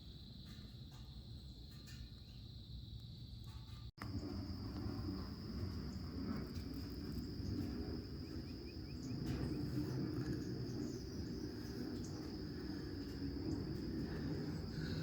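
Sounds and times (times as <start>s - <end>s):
insect trill: 0.0s - 15.0s
low rumbling background: 4.0s - 15.0s.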